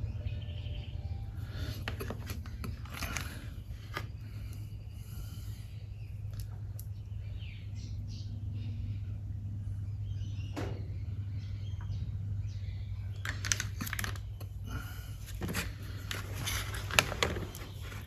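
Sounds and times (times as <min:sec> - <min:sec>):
steady low hum: 0:00.0 - 0:18.0
handling clicks and rustles: 0:01.7 - 0:04.9, 0:13.1 - 0:18.0.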